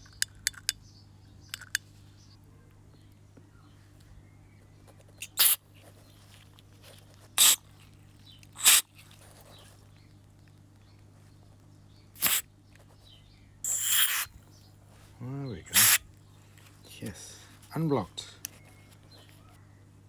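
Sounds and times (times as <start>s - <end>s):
hissing spray blasts: 8.6s - 8.8s, 12.2s - 12.4s, 13.7s - 14.4s, 15.7s - 16.0s.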